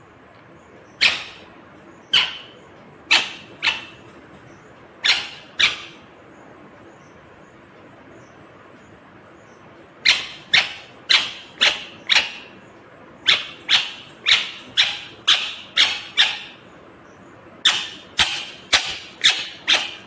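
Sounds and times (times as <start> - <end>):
parrot shrill calls: 1.0 - 4.2, 5.0 - 6.1, 10.0 - 12.6, 13.2 - 16.7, 17.6 - 20.0.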